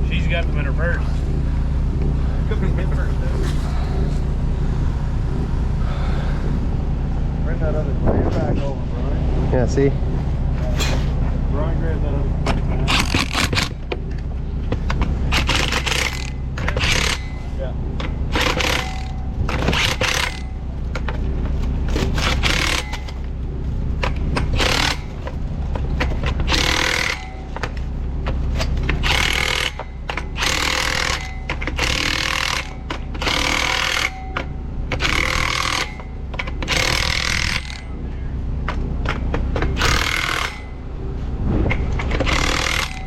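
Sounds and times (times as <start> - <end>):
low engine hum: 0.0 - 30.4, 34.3 - 43.0
impact wrench bursts: 12.8 - 13.8, 15.2 - 20.6, 22.0 - 23.2, 24.0 - 25.2, 26.0 - 27.8, 28.9 - 38.0, 39.6 - 40.8, 42.0 - 43.0.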